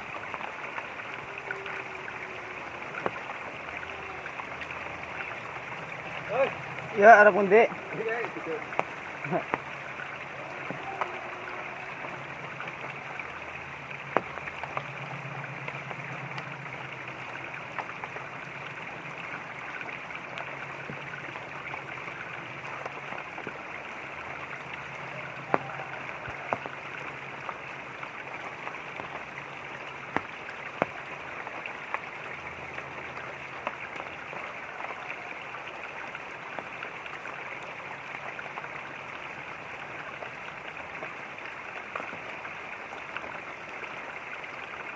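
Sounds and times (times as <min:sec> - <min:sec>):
raindrops tapping: 0:00.0 - 0:44.9
running water: 0:00.0 - 0:44.9.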